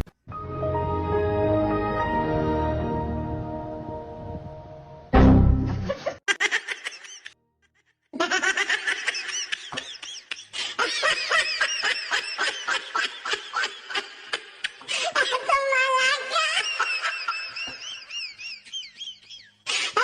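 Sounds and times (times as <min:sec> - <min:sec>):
music: 0:00.1 - 0:06.0.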